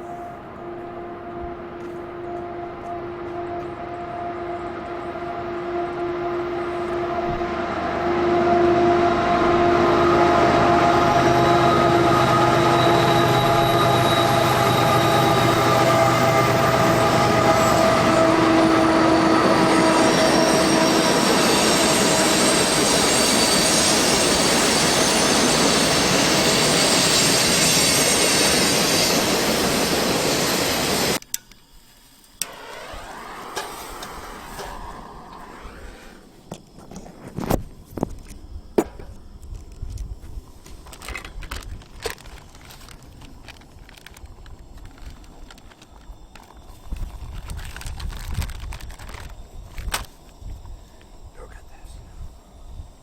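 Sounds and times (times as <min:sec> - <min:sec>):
train rumbling past: 0:00.0 - 0:31.2, 0:32.4 - 0:36.4
wheels squealing on rails: 0:00.0 - 0:31.2, 0:32.4 - 0:36.4.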